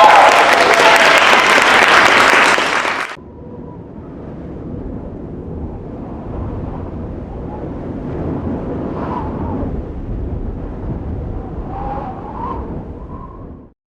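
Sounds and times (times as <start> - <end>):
wind rumbling on microphone: 3.2 - 13.7.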